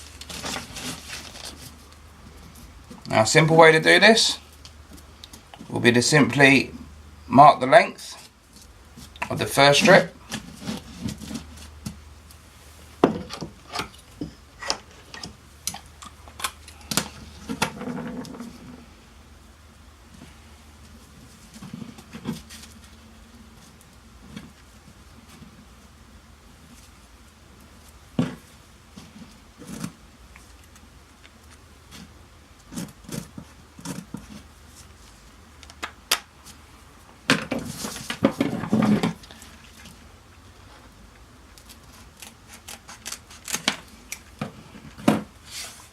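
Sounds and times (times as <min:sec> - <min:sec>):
velcro rasping: 0:41.7 - 0:44.2.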